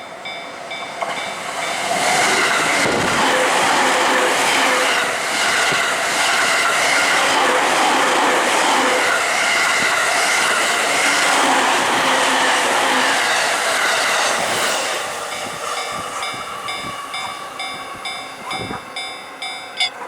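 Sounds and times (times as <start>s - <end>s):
train wheel and rail noise: 0.0s - 20.0s
level crossing bell ringing: 15.8s - 20.0s.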